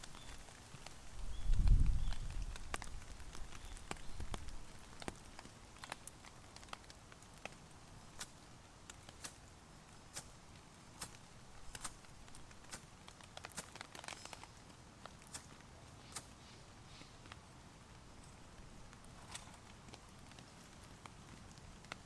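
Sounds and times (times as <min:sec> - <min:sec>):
campfire crackling and popping: 0:00.0 - 0:22.0
faint hiss of rain: 0:00.0 - 0:22.0.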